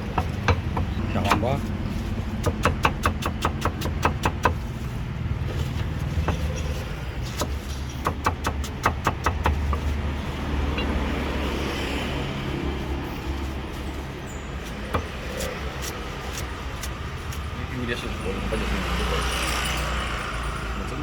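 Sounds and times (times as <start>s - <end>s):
street traffic hum: 0.0s - 21.0s
knife chopping on cutting board: 0.2s - 1.5s, 2.4s - 4.6s.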